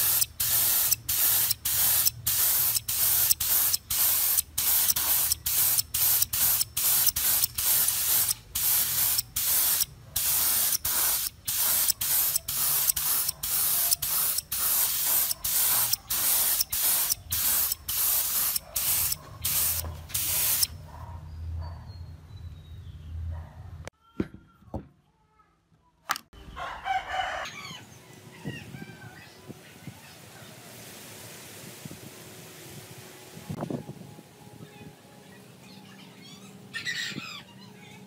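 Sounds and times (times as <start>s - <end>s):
spray nozzle hissing in bursts: 0.0s - 20.7s.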